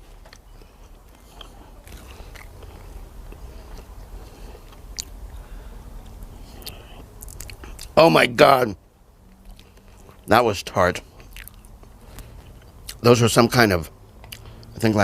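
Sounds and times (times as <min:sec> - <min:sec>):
person chewing fruit: 0:00.1 - 0:08.0, 0:09.4 - 0:10.3, 0:11.0 - 0:13.0, 0:14.2 - 0:14.8.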